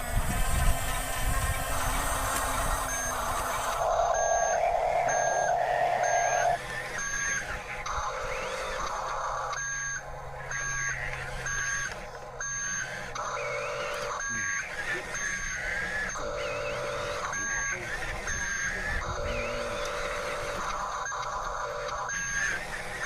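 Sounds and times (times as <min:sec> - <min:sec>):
electric motor whine: 0:00.0 - 0:23.0
reversing beeps: 0:02.6 - 0:22.6.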